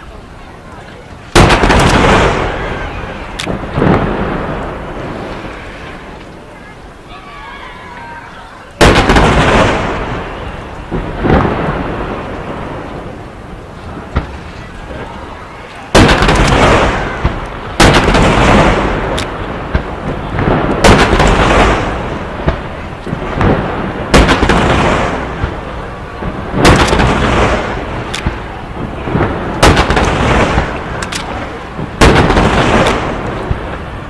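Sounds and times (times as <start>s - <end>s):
firework cracks and pops: 1.1s - 6.7s, 8.8s - 34.0s
firework shells booming: 1.2s - 6.5s, 8.8s - 34.0s.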